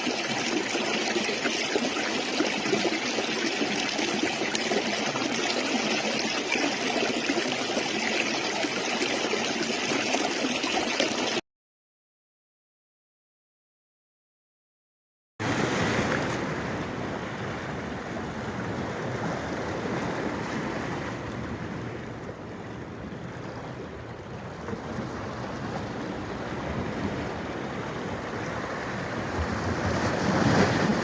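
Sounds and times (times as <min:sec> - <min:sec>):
running water rushing: 0:00.0 - 0:11.4.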